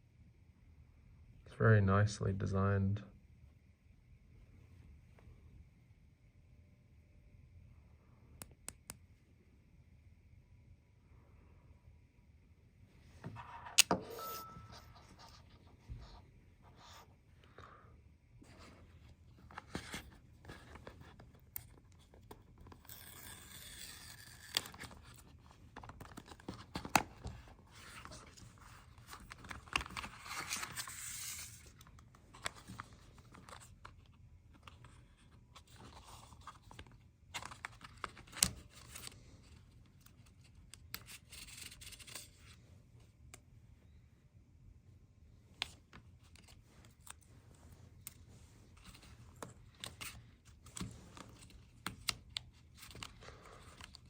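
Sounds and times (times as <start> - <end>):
cardboard packaging rustling: 24.6 - 33.9.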